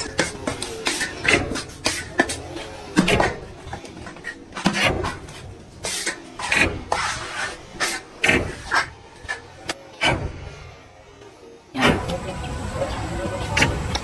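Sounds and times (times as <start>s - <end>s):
scraping and rubbing strokes: 0.0s - 9.8s.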